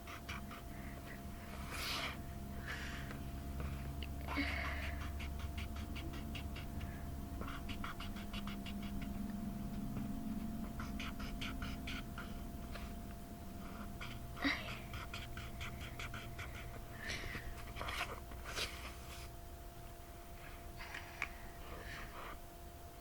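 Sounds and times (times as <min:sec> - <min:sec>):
marker scribbling on paper: 0:00.0 - 0:02.2, 0:04.6 - 0:09.3, 0:09.9 - 0:12.9, 0:13.6 - 0:16.8, 0:17.6 - 0:19.0
steady low hum: 0:00.0 - 0:23.0.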